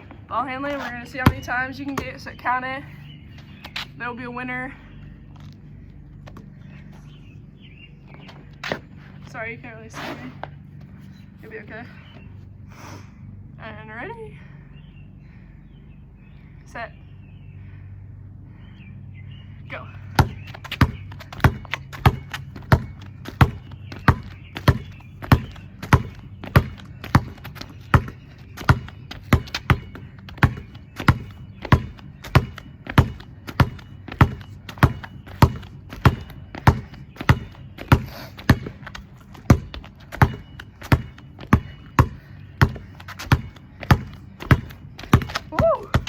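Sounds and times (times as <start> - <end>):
basketball bouncing: 0.0 - 2.4, 20.0 - 46.0.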